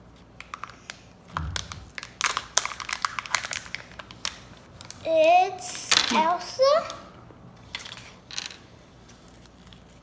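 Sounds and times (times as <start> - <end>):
wrapper crackling and rustling: 0.9 - 5.1, 9.0 - 10.0.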